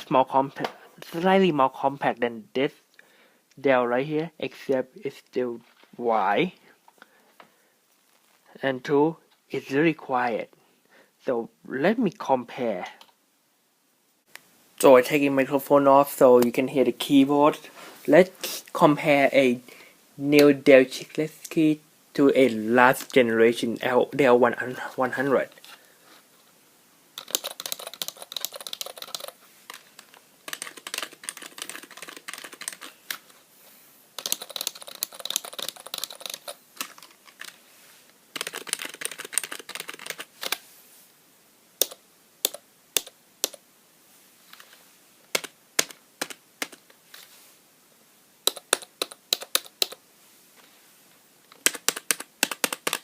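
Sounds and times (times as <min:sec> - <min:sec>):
keyboard typing: 0:27.2 - 0:33.0, 0:34.2 - 0:37.6, 0:38.3 - 0:40.6, 0:41.8 - 0:43.6, 0:45.3 - 0:46.8, 0:48.4 - 0:50.0, 0:51.5 - 0:53.0.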